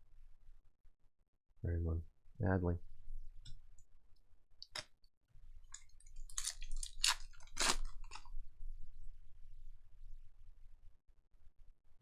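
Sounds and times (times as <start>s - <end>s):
cards and packs crinkling: 5.7s - 8.3s.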